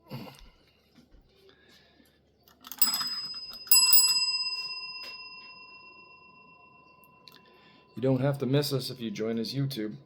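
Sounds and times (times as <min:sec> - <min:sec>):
small bell ringing: 0:02.7 - 0:08.2.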